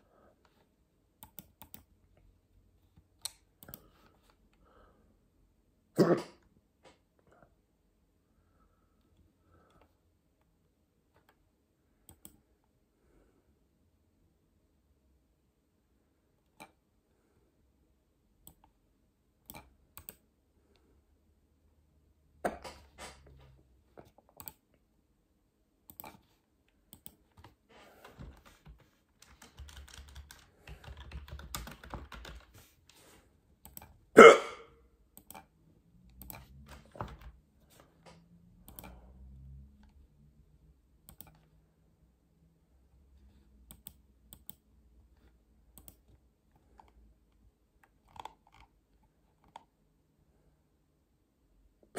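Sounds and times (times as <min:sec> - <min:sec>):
person hiccuping: 0:06.0 - 0:06.4, 0:34.2 - 0:34.8.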